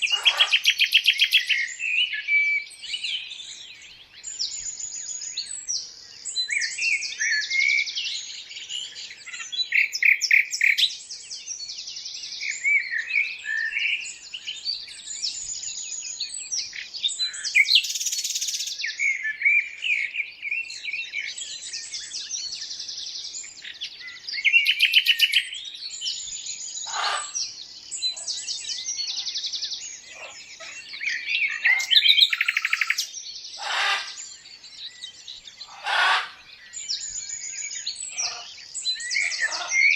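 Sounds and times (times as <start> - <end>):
harsh bird calls: 0.0 - 2.6, 23.5 - 39.9
songbirds chirping and singing: 0.0 - 39.9.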